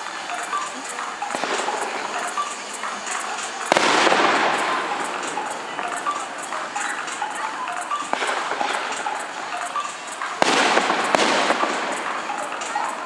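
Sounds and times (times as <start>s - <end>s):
firework cracks: 0.0s - 13.0s
fireworks crackling: 0.0s - 13.0s
firework bang: 3.3s - 13.0s.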